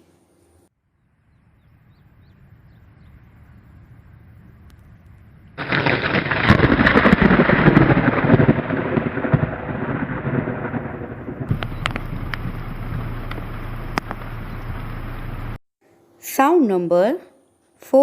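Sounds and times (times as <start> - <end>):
thunder rumbling and cracking: 3.9 - 15.6.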